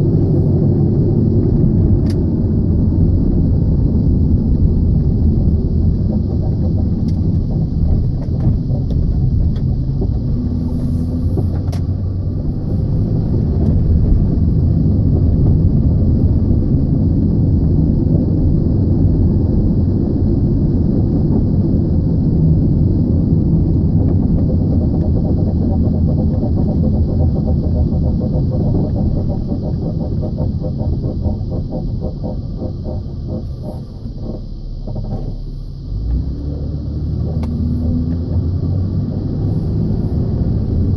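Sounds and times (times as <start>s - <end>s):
car wheels rumbling: 0.0s - 40.9s.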